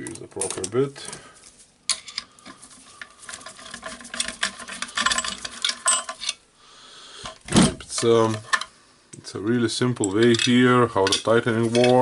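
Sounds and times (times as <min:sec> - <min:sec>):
screwdriver clicking and scraping on screw: 0:03.0 - 0:06.4.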